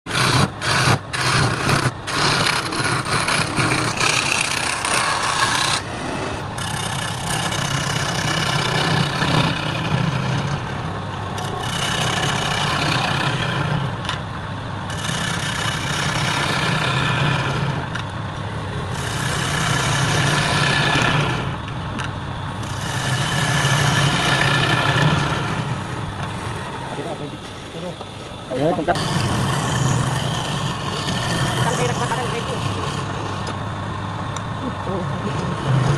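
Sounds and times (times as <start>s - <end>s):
tool hissing on spinning wood: 0.1s - 10.6s, 11.4s - 13.9s, 14.9s - 17.8s, 18.9s - 21.6s, 22.6s - 33.6s
wood lathe humming: 0.1s - 35.9s.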